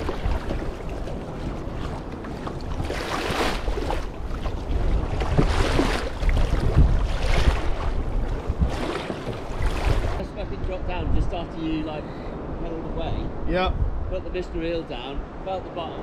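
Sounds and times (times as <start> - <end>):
sea water lapping around kayak: 0.0 - 10.3
wind buffeting microphone: 0.0 - 16.0.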